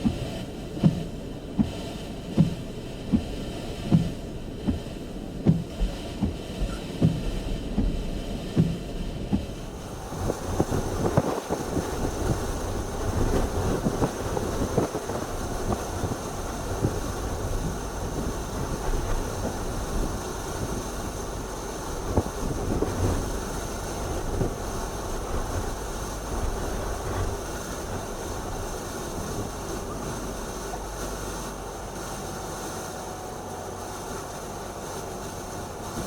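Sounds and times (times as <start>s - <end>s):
rushing noise with crackles: 0.0s - 36.0s
vehicle running noise: 0.0s - 36.0s
regular thumps: 0.8s - 20.9s.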